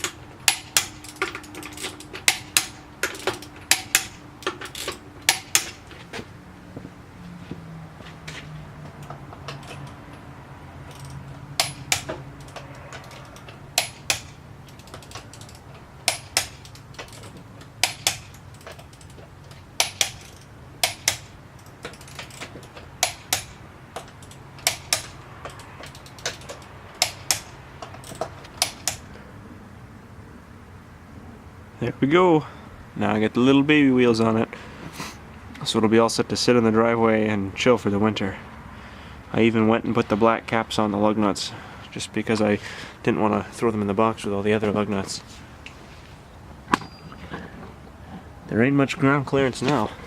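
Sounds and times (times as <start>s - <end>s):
sharp metallic clicks and clinks: 0.0s - 5.9s, 8.8s - 29.2s.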